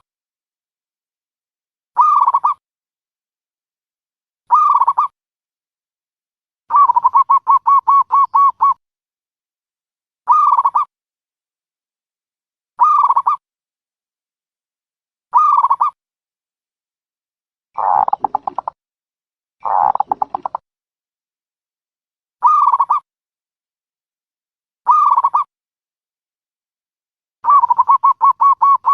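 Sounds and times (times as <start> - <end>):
dove cooing: 6.7 - 8.8, 17.8 - 18.7, 19.6 - 20.6, 27.5 - 28.9.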